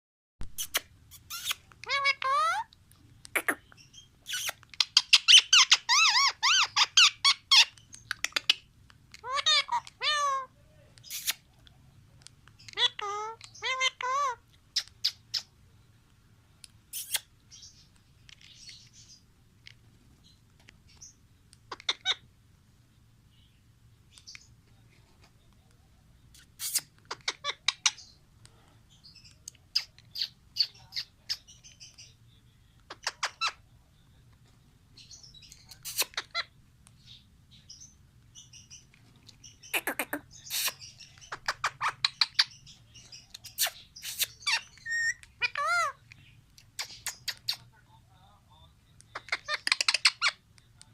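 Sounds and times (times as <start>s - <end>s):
parrots chirping and squawking: 0.5s - 11.6s, 12.6s - 15.5s, 16.9s - 19.2s, 20.9s - 22.3s, 26.4s - 28.2s, 29.0s - 32.2s, 32.9s - 33.6s, 35.0s - 47.7s, 49.1s - 50.4s.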